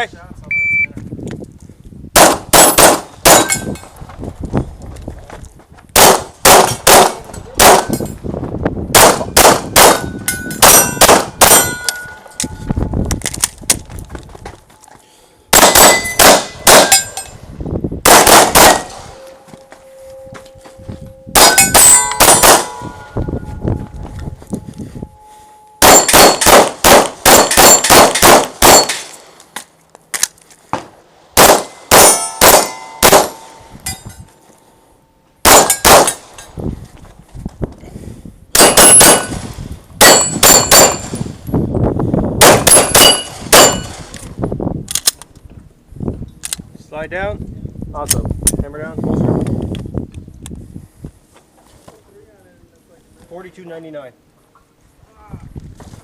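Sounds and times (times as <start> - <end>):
airsoft pistol shots: 2.2 - 3.6, 6.0 - 8.0, 8.9 - 11.9, 15.5 - 17.1, 18.0 - 19.1, 21.4 - 22.8, 25.8 - 29.2, 31.4 - 33.5, 35.4 - 36.3, 38.6 - 41.2, 42.4 - 44.1
bbs clanging on steel targets: 18.7 - 26.5.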